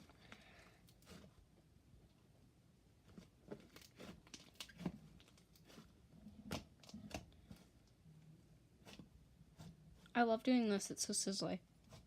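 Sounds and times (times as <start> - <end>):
slime squishing with pops: 3.0 - 8.0
woman speaking: 10.2 - 11.6.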